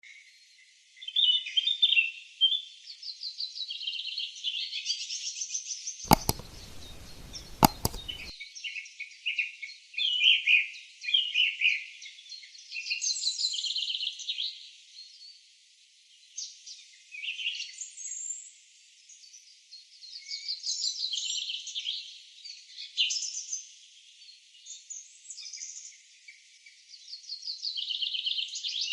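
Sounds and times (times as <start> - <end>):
sharp clicks: 6.1 - 8.3
small birds chirping and trilling: 6.1 - 8.3.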